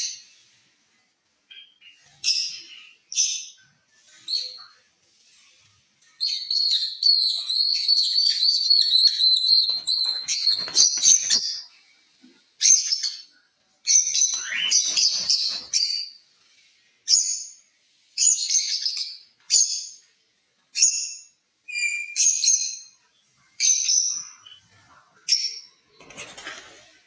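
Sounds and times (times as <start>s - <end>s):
lovebirds chirping and chattering: 1.5s - 11.9s, 12.6s - 20.0s.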